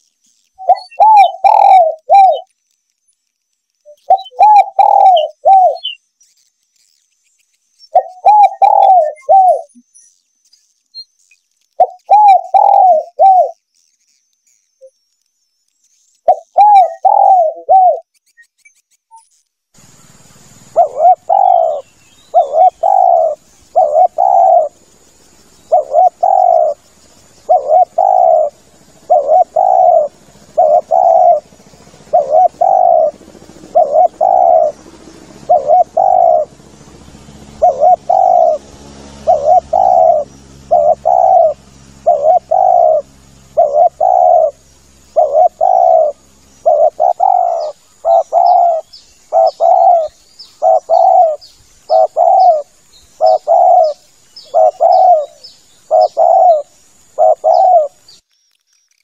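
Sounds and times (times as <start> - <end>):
faint high chirps: 0.0 - 59.0
dove cooing: 0.6 - 2.5, 3.9 - 6.0, 7.9 - 9.7, 11.8 - 13.6, 16.3 - 18.1, 20.6 - 58.1.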